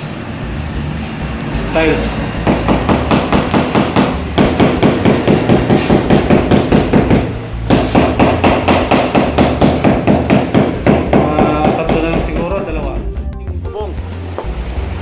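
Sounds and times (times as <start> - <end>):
rapid even knocking: 2.4 - 12.7.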